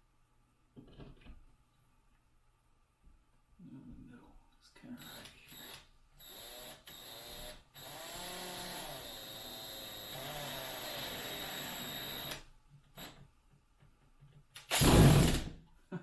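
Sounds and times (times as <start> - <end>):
power drill driving a screw: 5.0 - 12.4, 14.7 - 15.5.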